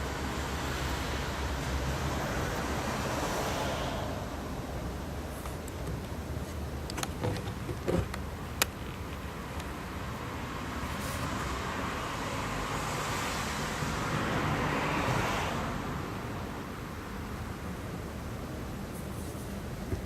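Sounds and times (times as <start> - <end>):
vehicle passing on road: 0.0 - 5.3, 9.1 - 17.2.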